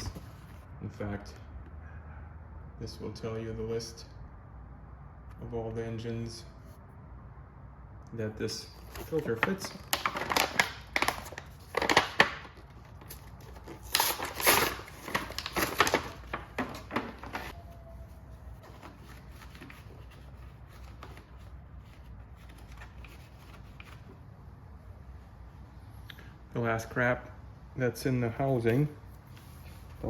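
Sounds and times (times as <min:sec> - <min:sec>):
faint steady background noise: 0:00.0 - 0:30.0
crinkling and rustling of handling: 0:08.7 - 0:24.2.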